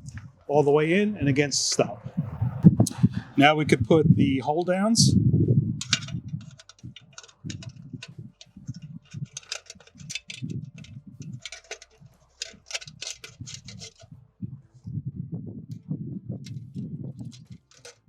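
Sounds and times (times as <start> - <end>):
metal hardware clicking: 5.8 - 14.1, 17.2 - 18.0.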